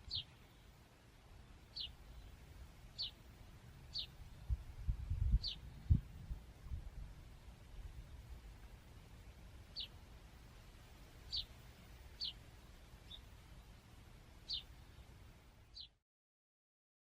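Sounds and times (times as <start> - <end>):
songbird calling: 0.0 - 0.8, 1.4 - 3.2, 3.8 - 4.6, 5.3 - 6.0, 9.3 - 10.0, 11.2 - 16.0.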